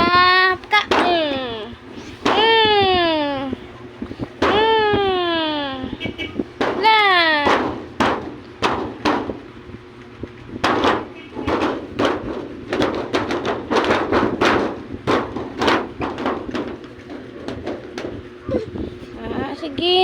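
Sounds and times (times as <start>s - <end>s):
child banging on plywood wall: 0.0s - 1.6s, 2.2s - 3.6s, 4.4s - 5.5s, 6.4s - 9.5s, 10.6s - 18.2s.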